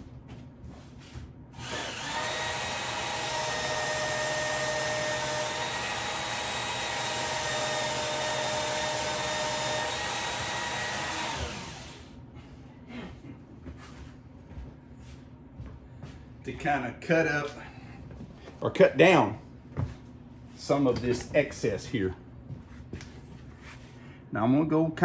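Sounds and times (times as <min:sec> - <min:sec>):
fan whirring: 0:00.0 - 0:12.9.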